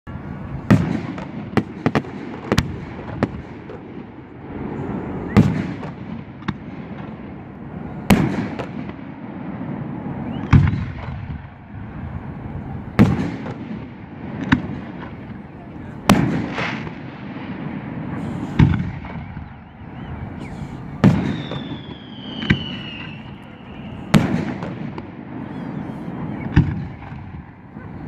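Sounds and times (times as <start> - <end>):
small firework pops: 0.7 - 3.9, 5.3 - 7.2, 10.3 - 11.5, 14.4 - 15.4, 18.2 - 19.5, 20.4 - 25.8, 26.4 - 27.5
firework shells bursting: 20.4 - 27.6.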